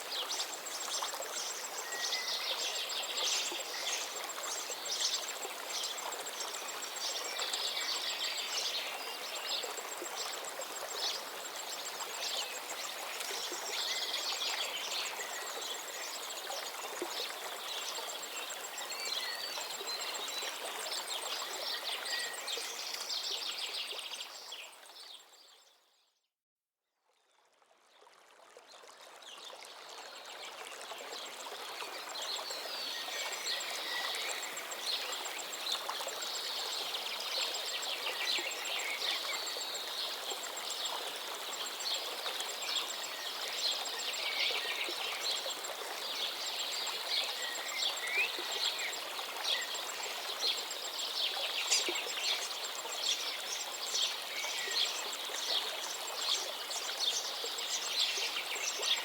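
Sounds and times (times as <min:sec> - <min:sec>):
running water: 0:27.5 - 0:59.0.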